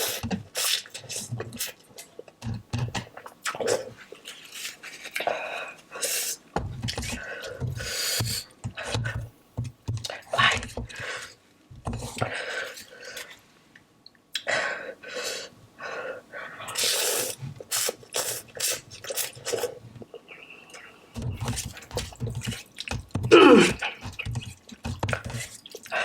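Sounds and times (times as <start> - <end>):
noodles slurped: 16.7 - 19.8
chewing: 17.6 - 26.0.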